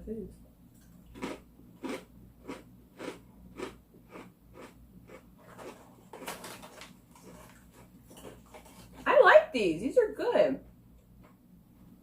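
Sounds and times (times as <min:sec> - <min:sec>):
person chewing crisp cracker: 0:00.8 - 0:09.0.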